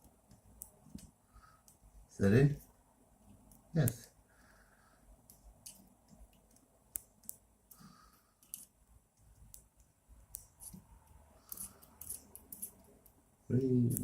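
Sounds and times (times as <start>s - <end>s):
small screws and parts clicking: 5.2s - 13.2s.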